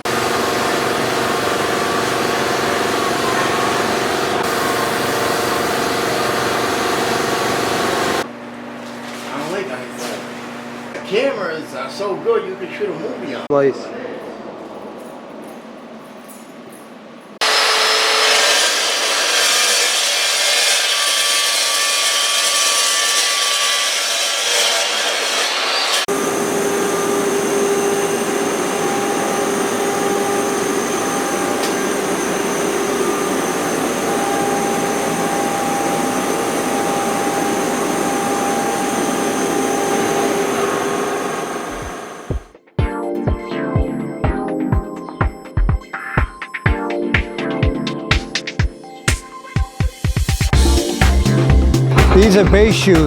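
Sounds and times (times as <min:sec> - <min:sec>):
power tool cutting steel pipe: 0:00.0 - 0:08.3, 0:17.4 - 0:42.4.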